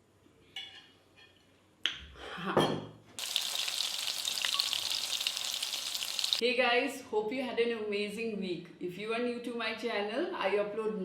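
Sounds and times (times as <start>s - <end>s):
food sizzling in oil: 3.2s - 6.4s.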